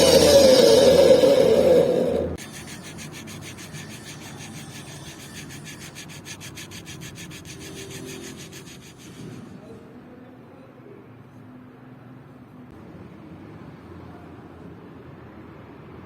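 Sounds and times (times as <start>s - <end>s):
abrasive rubbing strokes: 0.0s - 9.6s.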